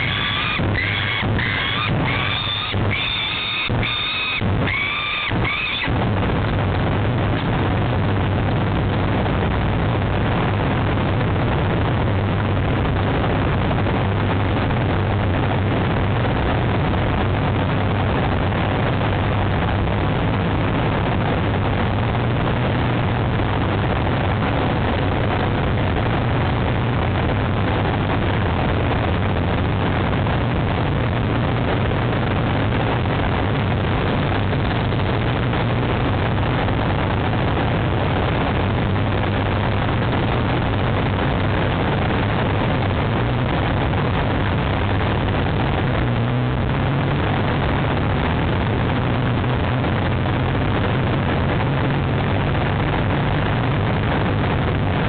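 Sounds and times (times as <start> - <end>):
falcon call: 0.0 - 5.9
constant low hum: 0.0 - 55.0
rumbling hiss: 0.0 - 55.0.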